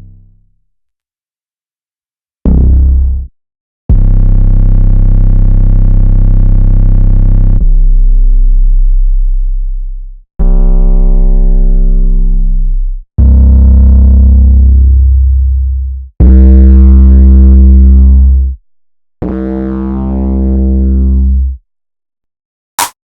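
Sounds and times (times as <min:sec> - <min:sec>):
deep synthesizer bass notes: 0:00.0 - 0:00.6, 0:02.5 - 0:03.3, 0:03.9 - 0:18.6, 0:19.2 - 0:21.6.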